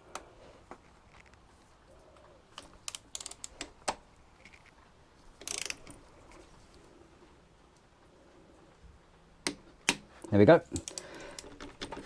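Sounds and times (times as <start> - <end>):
ratchet wrench clicking: 2.9 - 3.6, 5.4 - 5.9.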